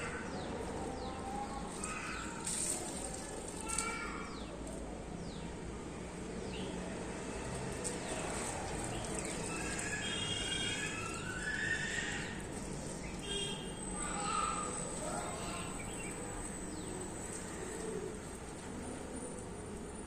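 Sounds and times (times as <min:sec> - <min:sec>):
steady outdoor background: 0:00.0 - 0:20.0
long multi-tone animal call: 0:09.9 - 0:12.4.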